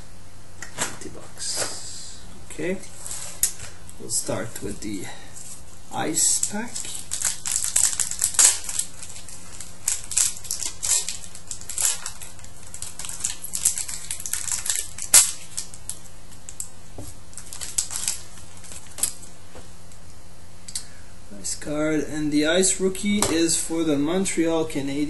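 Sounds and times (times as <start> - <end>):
foil wrapper tearing and crinkling: 5.5 - 16.7, 17.3 - 19.3.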